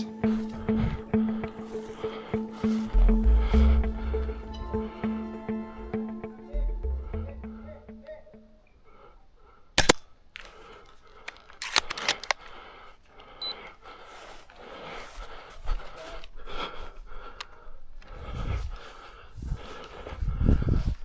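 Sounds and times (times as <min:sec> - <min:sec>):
sharp clicks: 0:11.2 - 0:12.5.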